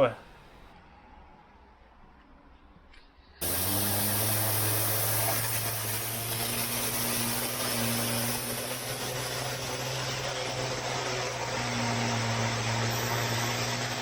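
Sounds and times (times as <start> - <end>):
pressure washer motor hum: 3.4 - 14.0
pressure washer spray hissing: 3.4 - 14.0.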